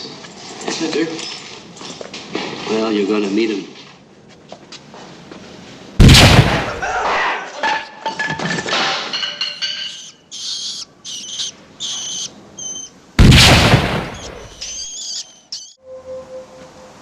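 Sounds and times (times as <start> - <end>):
loud gunshot: 6.0 - 7.0, 13.2 - 14.6.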